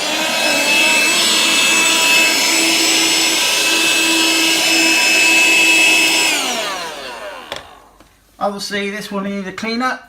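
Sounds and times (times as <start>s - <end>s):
handheld vacuum cleaner whining: 0.0s - 8.0s.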